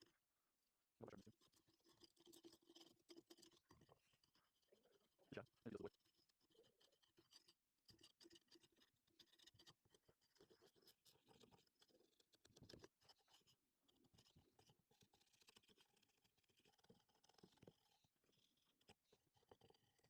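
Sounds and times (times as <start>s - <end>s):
faint scratching: 1.1s - 12.0s.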